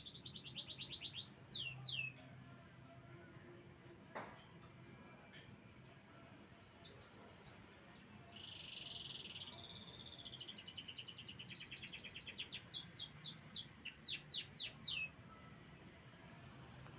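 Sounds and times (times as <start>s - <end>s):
canary singing: 0.0s - 2.3s, 6.4s - 15.2s.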